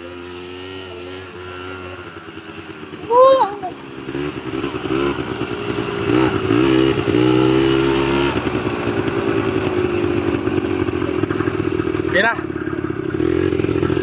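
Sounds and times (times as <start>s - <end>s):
atv engine running: 0.0s - 14.0s.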